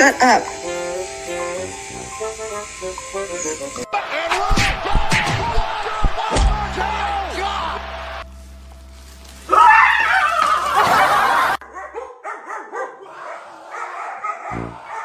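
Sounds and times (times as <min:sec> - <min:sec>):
dog barking and yipping: 0:10.4 - 0:15.0.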